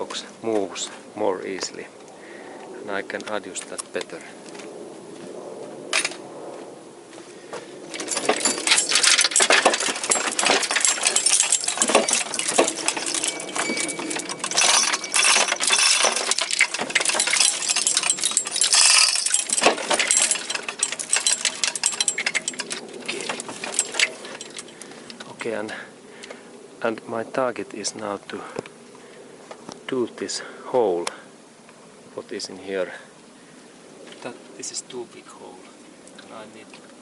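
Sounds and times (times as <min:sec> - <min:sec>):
metal tools clinking and rattling: 0:07.9 - 0:25.4.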